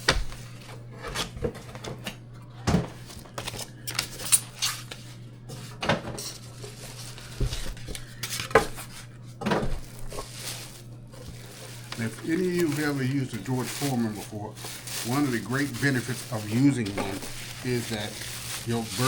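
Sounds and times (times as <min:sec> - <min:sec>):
steady low hum: 0:00.0 - 0:19.0
kitchen items clattering: 0:05.5 - 0:19.0.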